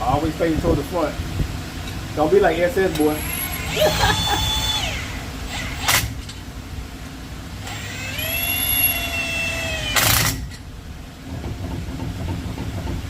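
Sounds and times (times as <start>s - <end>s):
power tool motor running: 3.2s - 6.1s, 7.6s - 10.5s.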